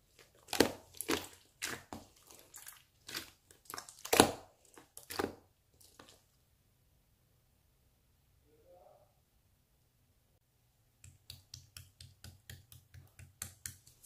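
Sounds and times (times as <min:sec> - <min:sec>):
slime squished by hand: 0:00.1 - 0:06.3.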